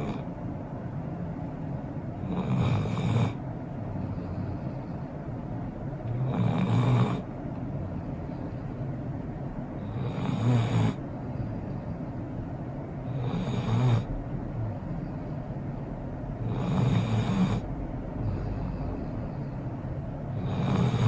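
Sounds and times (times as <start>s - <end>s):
dog snoring: 0.0s - 0.3s, 2.2s - 5.1s, 6.1s - 7.3s, 9.8s - 12.0s, 13.0s - 15.4s, 16.4s - 19.7s, 20.3s - 21.0s.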